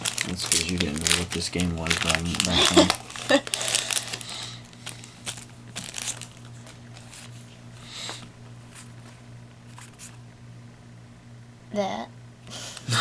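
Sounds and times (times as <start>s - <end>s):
trading cards rustling and sliding: 0.0s - 10.3s.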